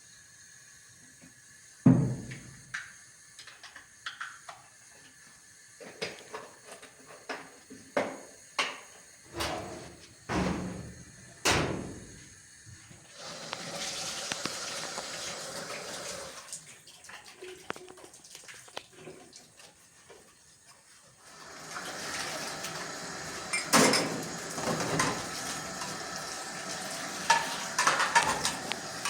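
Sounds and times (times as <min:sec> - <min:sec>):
steady rushing hiss: 0:00.0 - 0:16.4
knocks and thuds of objects: 0:01.9 - 0:02.6.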